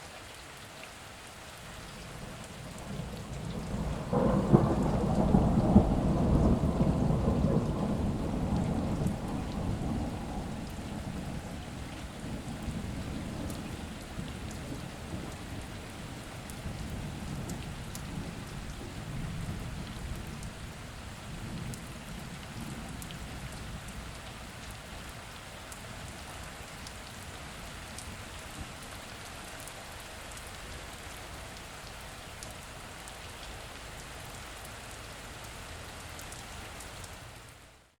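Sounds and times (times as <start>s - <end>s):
heavy rain: 0.0s - 38.0s
low thunder rumbles: 1.9s - 24.6s.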